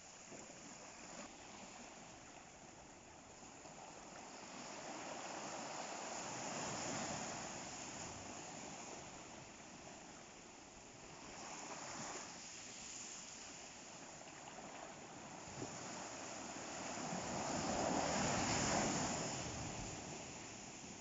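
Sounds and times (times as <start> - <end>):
ocean waves breaking: 14.6 - 21.0.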